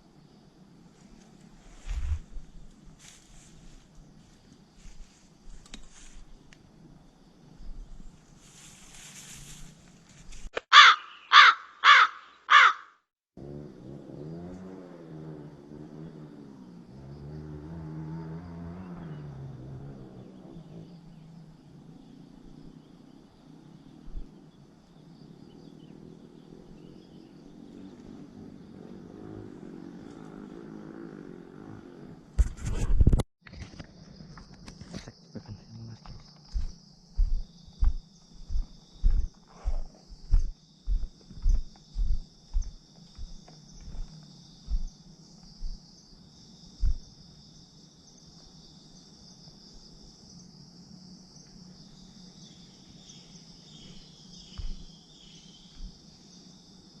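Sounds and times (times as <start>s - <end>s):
bird cawing: 10.6s - 13.0s.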